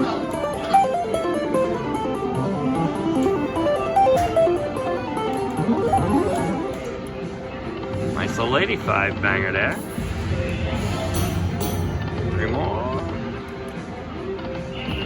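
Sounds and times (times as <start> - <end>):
electric guitar melody: 0.0 - 7.5.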